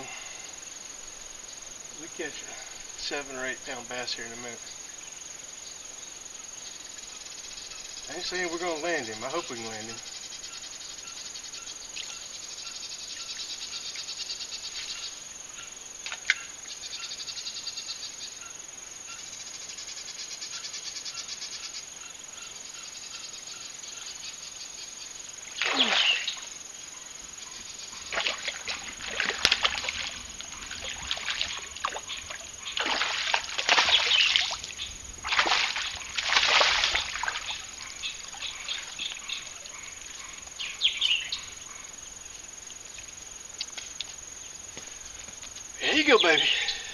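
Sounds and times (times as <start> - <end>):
insects trilling: 0.0 - 46.9
fish thrashing splashes: 25.6 - 26.4, 28.0 - 38.9.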